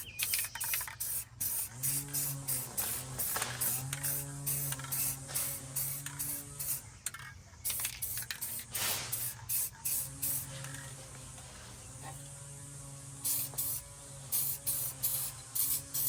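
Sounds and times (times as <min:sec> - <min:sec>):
spray paint can spraying: 0:00.0 - 0:11.7, 0:13.0 - 0:16.0.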